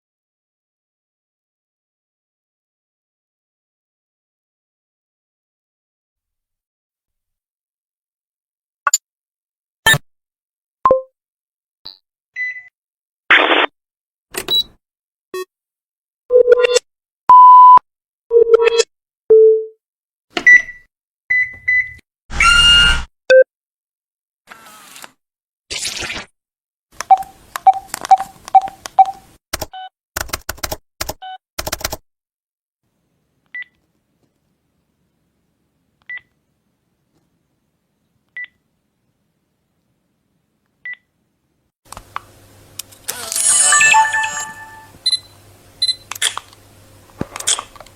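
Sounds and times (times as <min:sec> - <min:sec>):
electronic button beeps: 0:10.9 - 0:11.1, 0:14.5 - 0:14.7
low hum with clicks: 0:41.9 - 0:43.2, 0:44.9 - 0:47.9.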